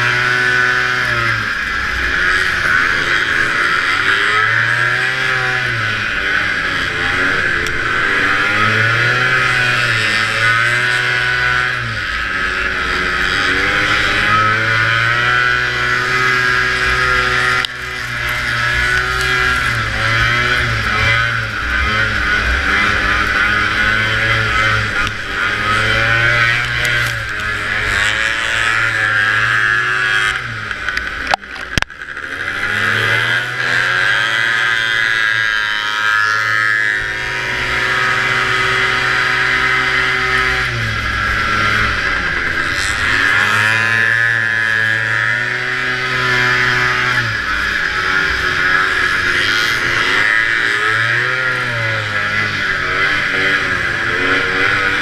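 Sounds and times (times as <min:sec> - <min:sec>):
snowmobile engine revving: 0:00.0 - 0:55.0.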